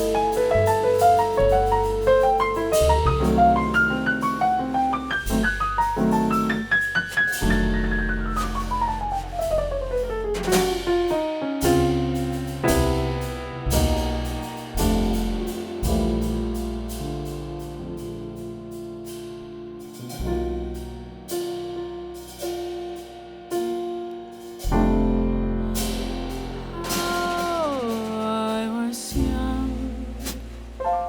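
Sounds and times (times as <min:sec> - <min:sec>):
light drums: 0:00.0 - 0:19.2, 0:25.8 - 0:31.0
piano chords ringing: 0:00.0 - 0:22.0, 0:24.7 - 0:31.0
double bass: 0:00.0 - 0:31.0.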